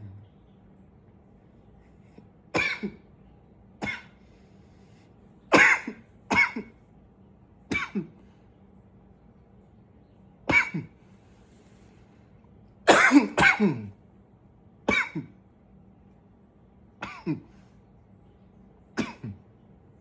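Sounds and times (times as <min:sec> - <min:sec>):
man coughing: 0:02.6 - 0:03.0, 0:05.6 - 0:06.7, 0:07.7 - 0:08.2, 0:10.5 - 0:11.0, 0:12.9 - 0:14.0, 0:14.9 - 0:15.3, 0:17.0 - 0:17.5, 0:19.0 - 0:19.4.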